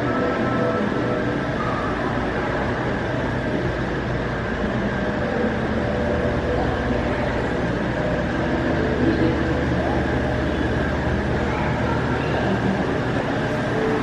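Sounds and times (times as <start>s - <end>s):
low rumbling aquarium hum: 5.3s - 12.8s.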